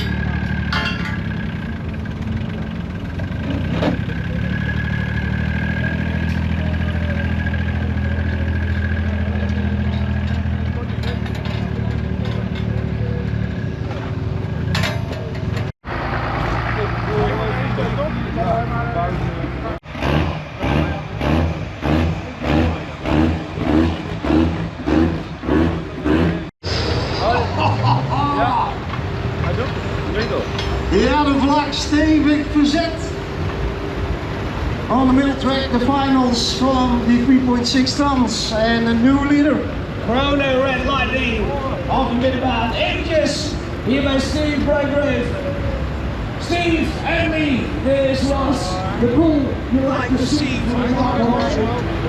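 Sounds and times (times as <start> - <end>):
large engine idling: 0.0 - 19.8.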